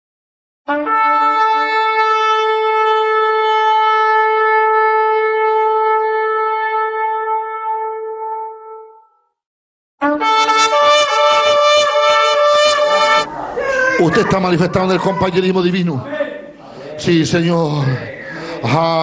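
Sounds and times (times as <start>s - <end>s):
ram's horn blast: 10.0s - 13.3s.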